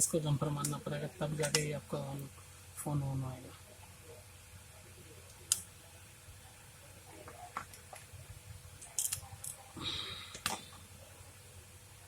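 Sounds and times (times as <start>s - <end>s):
small tools tapping circuit board: 1.4s - 1.7s, 8.8s - 9.6s.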